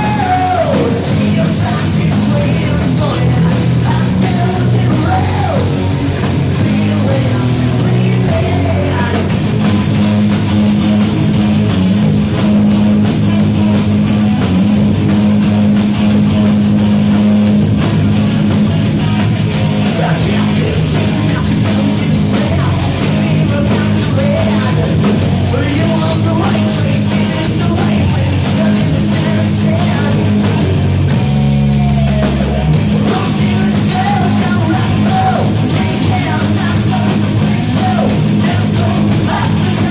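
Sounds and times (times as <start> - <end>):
shouted vocals: 0.0 - 5.9
bass line: 0.0 - 39.9
distorted guitars: 0.0 - 39.9
live rock band: 0.0 - 39.9.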